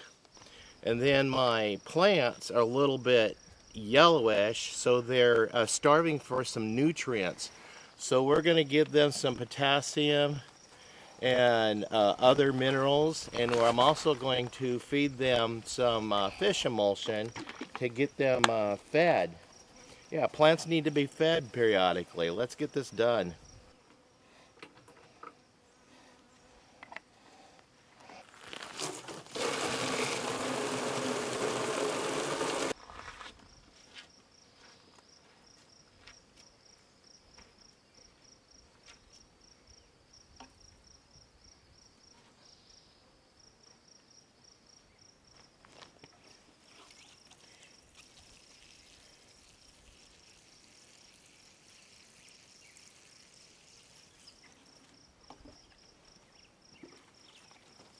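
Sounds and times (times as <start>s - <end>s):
insects chirping trill: 0.0s - 5.1s, 32.7s - 57.9s.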